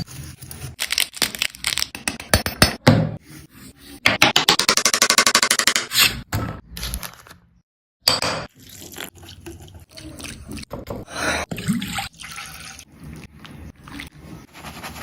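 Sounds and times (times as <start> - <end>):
liquid pouring and splashing: 8.5 - 10.8, 11.5 - 14.2.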